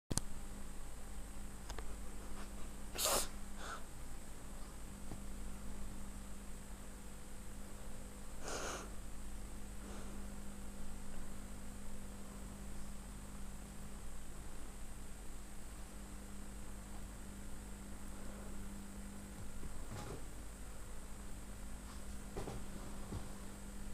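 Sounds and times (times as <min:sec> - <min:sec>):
electrical hum: 0:00.1 - 0:23.9
bird sneezing: 0:02.9 - 0:03.8.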